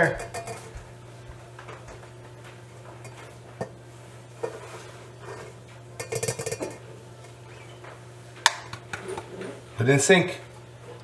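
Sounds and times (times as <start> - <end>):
utensils and dishes clinking: 0.0 - 0.8, 2.8 - 3.8, 4.4 - 11.0
steady low hum: 0.0 - 11.0.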